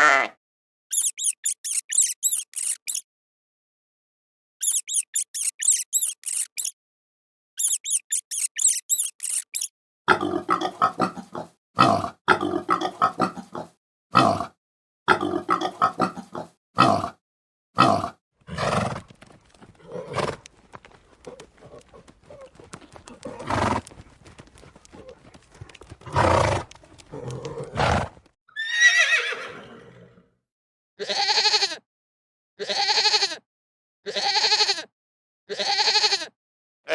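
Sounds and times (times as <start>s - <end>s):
dull animal sound: 0.9s - 3.0s, 4.6s - 6.7s, 7.6s - 12.0s
rat squeaking: 0.9s - 3.0s, 4.6s - 6.8s, 7.6s - 9.7s
pig grunting: 10.1s - 14.5s, 15.1s - 17.2s, 17.8s - 18.7s.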